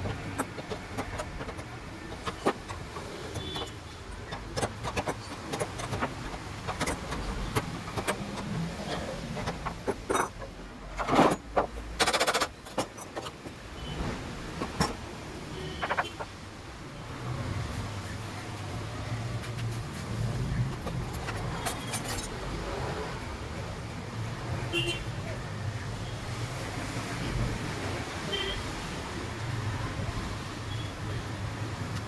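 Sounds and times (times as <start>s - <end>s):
rapid rattling: 0.0s - 13.6s
clicks of metal parts and tools: 0.0s - 13.9s, 14.5s - 16.4s, 20.7s - 22.4s.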